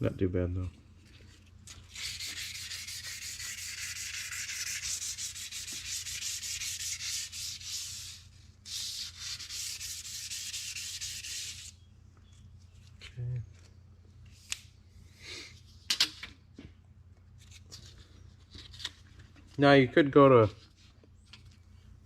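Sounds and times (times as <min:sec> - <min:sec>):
sandpaper rubbing on metal: 0:01.8 - 0:11.8.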